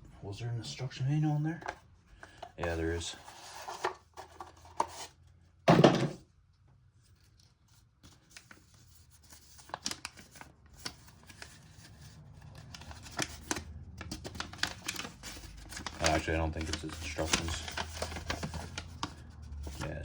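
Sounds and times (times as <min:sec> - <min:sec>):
loud thump: 0:05.7 - 0:06.2
paper rustling: 0:07.0 - 0:20.0.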